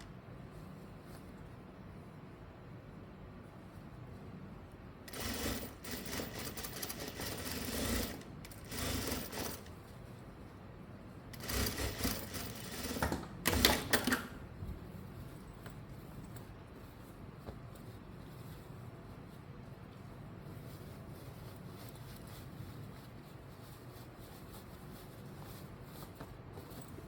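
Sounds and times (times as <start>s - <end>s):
sewing machine stitching: 5.1s - 9.8s, 11.3s - 14.4s.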